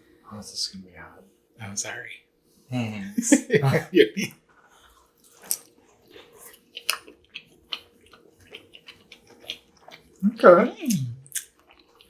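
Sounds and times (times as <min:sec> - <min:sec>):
chewing chicken wings: 0:04.7 - 0:10.2, 0:10.8 - 0:12.0.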